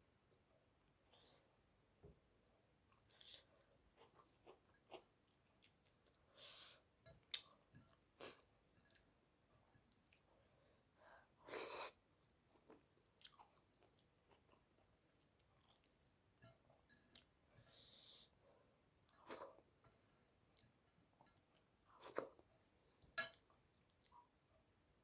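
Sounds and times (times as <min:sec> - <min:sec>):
chewing and wet mouth noises: 0:02.9 - 0:06.2, 0:12.5 - 0:16.0.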